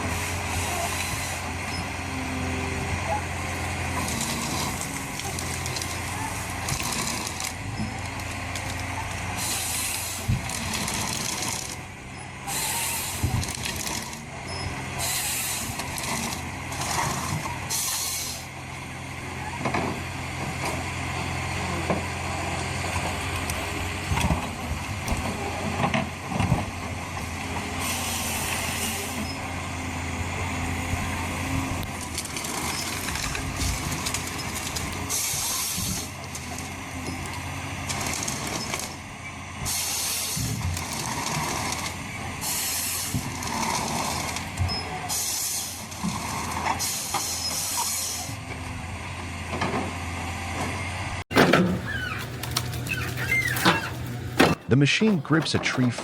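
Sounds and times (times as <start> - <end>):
diesel engine running: 0.0 - 56.0
hydraulic hissing bursts: 9.2 - 11.6, 12.4 - 13.6, 17.7 - 18.5, 39.6 - 40.6, 42.4 - 43.6, 45.1 - 48.4
timber cracking and knocking: 51.3 - 56.0.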